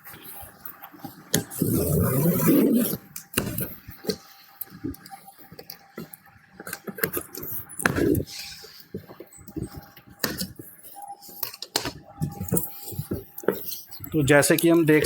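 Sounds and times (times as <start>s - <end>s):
cardboard and packing rustling: 0.0s - 15.0s
cardboard tearing: 1.5s - 3.7s.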